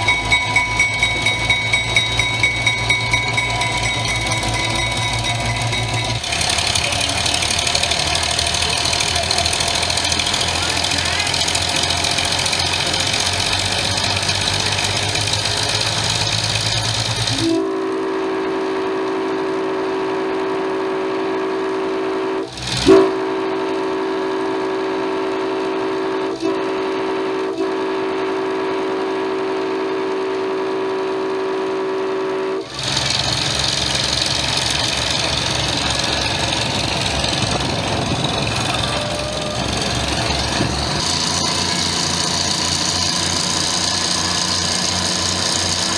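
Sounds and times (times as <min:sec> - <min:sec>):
locomotive air horn: 0:00.0 - 0:45.9
train rumbling: 0:00.0 - 0:45.9.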